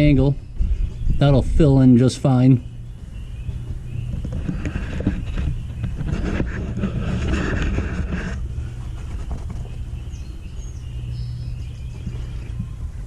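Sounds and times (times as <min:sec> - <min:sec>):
wind on microphone: 0:00.0 - 0:01.9, 0:03.4 - 0:09.8
machine humming: 0:00.0 - 0:13.0
rustling: 0:03.5 - 0:09.9.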